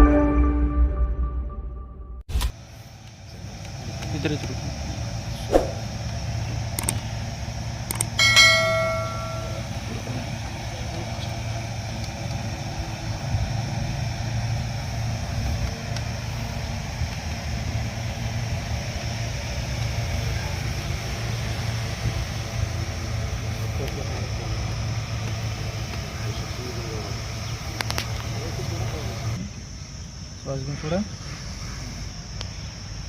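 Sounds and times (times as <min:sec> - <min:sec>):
steady low hum: 0:02.3 - 0:33.0
sharp clicks: 0:06.7 - 0:07.1, 0:07.8 - 0:08.2
metallic ringing strike: 0:08.2 - 0:10.0.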